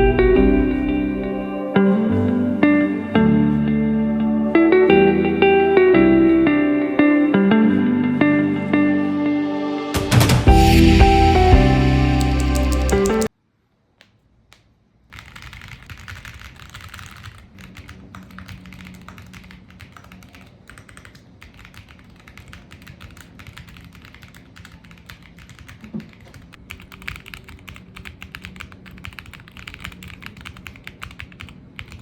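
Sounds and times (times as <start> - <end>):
mechanical keyboard typing: 12.2 - 13.3, 15.1 - 32.0.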